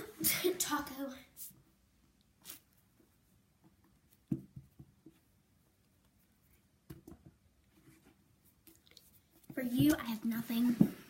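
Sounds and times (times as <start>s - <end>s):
handling knocks and rustles: 9.3s - 11.0s.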